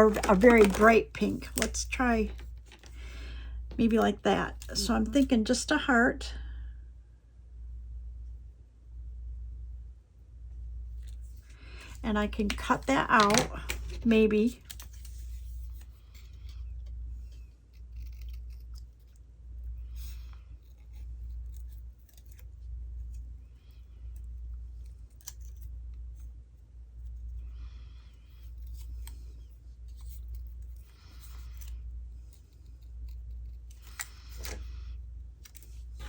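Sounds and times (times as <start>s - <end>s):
scissors snipping paper: 0.0s - 2.8s, 12.4s - 16.6s, 17.6s - 19.2s, 20.0s - 23.2s, 24.1s - 25.8s, 28.5s - 34.7s.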